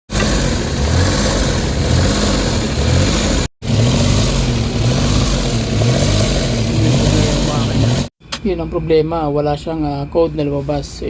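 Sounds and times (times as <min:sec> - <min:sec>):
car engine rough hunting idle: 0:00.1 - 0:08.1.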